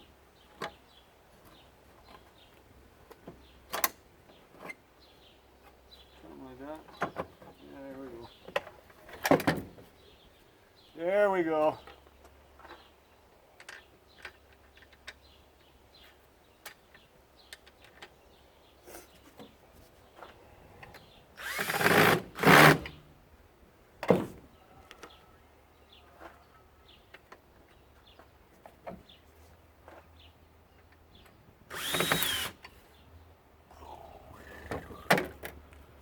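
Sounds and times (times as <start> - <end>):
power drill spinning: 21.4 - 22.9, 31.7 - 32.6.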